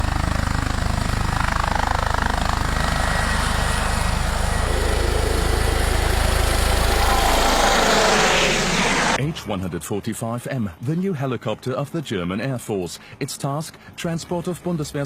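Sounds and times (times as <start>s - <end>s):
helicopter rotor beating: 0.0s - 9.2s
helicopter turbine noise: 0.0s - 9.2s.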